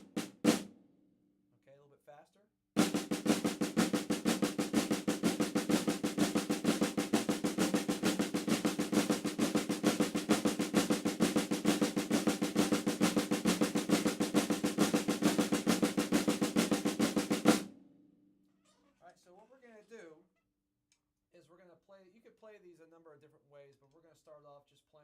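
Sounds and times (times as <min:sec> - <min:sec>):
snare drum rudiment: 0:00.0 - 0:00.8, 0:02.8 - 0:17.8.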